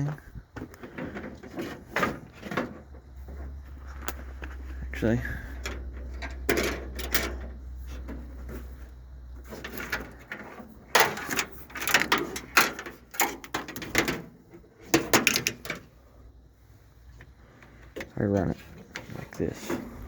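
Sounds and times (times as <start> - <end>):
clicks rattles and knocks of handling: 0.0 - 16.0.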